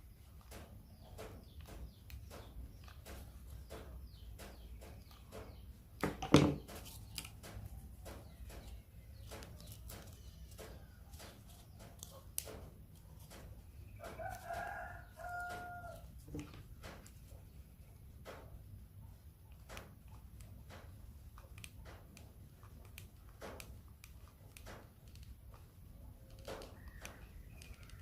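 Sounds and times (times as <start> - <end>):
rooster crowing: 14.2 - 16.1.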